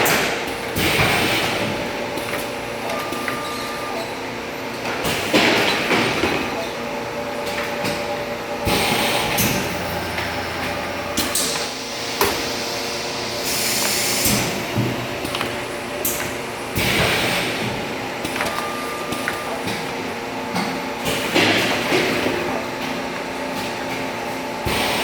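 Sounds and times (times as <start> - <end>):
packaging machine humming: 0.0 - 25.0
hissing air: 11.5 - 14.6.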